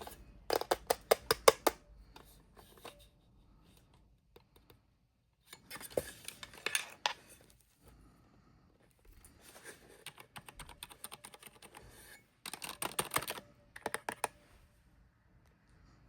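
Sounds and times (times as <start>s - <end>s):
mechanical keyboard typing: 10.0s - 14.4s.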